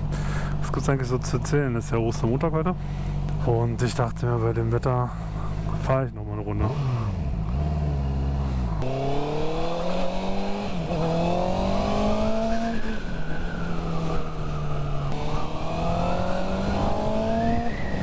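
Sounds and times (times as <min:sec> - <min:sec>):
motorcycle engine accelerating: 0:00.0 - 0:18.0
quick gear upshifts: 0:00.0 - 0:18.0.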